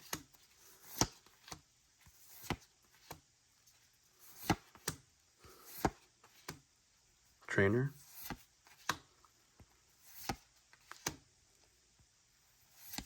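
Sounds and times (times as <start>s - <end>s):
cards flipped snapping: 0.8s - 1.6s, 10.1s - 11.2s.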